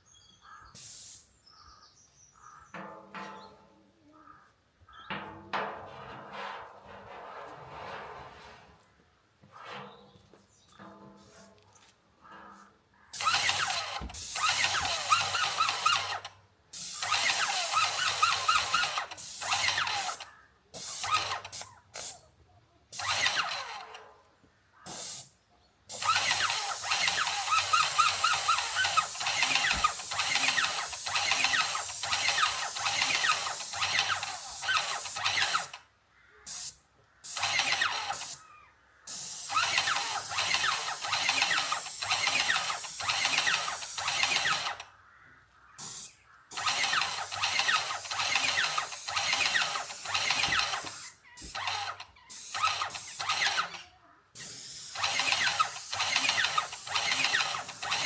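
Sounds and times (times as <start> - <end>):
power tool grinding metal: 13.2 - 16.3, 46.6 - 53.8, 54.9 - 58.0.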